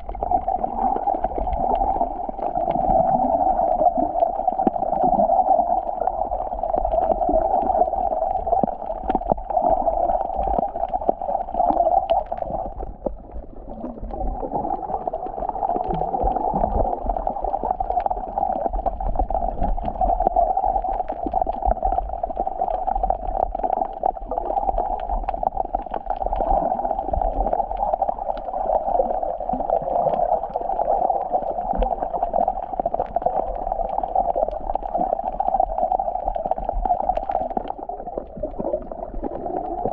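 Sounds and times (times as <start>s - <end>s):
muffled water gurgling and sloshing: 0.0s - 39.9s.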